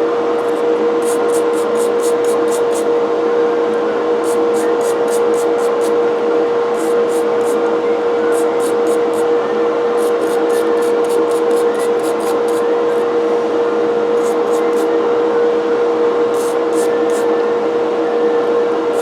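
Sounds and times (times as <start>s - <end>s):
motor hum: 0.0s - 17.7s
wire brush scrubbing metal: 0.4s - 2.9s, 4.2s - 6.0s, 6.7s - 7.6s, 8.3s - 9.3s, 10.0s - 13.1s, 14.2s - 14.9s, 16.4s - 17.3s.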